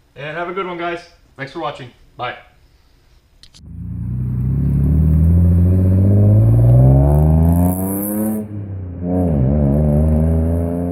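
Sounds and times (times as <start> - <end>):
car engine revving: 3.6 - 10.9.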